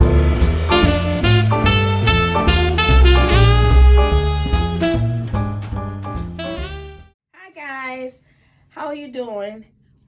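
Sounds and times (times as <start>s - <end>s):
instrumental jazz music: 0.0s - 7.2s.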